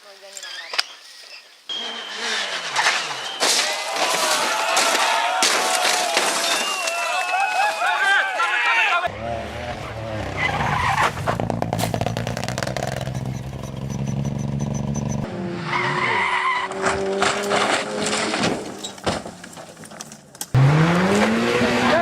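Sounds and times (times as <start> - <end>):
tyre squeal: 0.4 - 4.5, 9.9 - 17.1
car sliding: 1.7 - 7.9, 9.1 - 22.0
rally car engine running hard: 9.1 - 15.6, 20.6 - 22.0.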